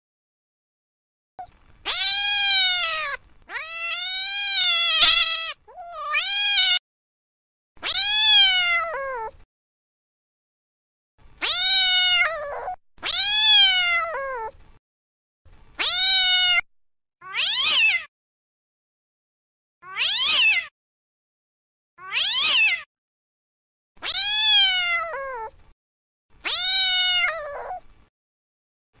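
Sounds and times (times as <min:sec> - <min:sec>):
cat meowing: 0:01.9 - 0:06.8, 0:07.8 - 0:09.4, 0:11.4 - 0:14.6, 0:15.8 - 0:18.1, 0:19.8 - 0:20.7, 0:22.0 - 0:22.9, 0:24.0 - 0:25.6, 0:26.4 - 0:27.8.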